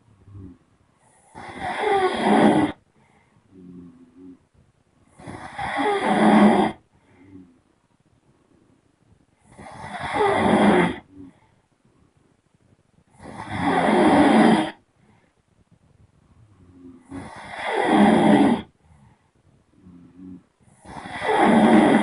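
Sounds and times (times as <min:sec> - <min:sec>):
soft breath: 0:00.0 - 0:04.4, 0:06.8 - 0:10.4, 0:11.0 - 0:13.4, 0:14.6 - 0:21.4
person snoring: 0:00.2 - 0:02.8, 0:03.5 - 0:04.4, 0:05.1 - 0:07.6, 0:09.5 - 0:11.4, 0:13.2 - 0:14.8, 0:16.6 - 0:19.0, 0:19.8 - 0:22.0.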